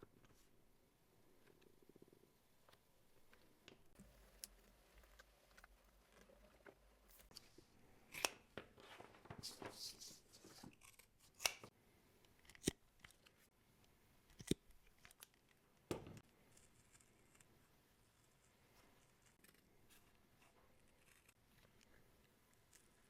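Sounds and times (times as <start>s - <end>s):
scissors snipping: 10.7s - 11.7s.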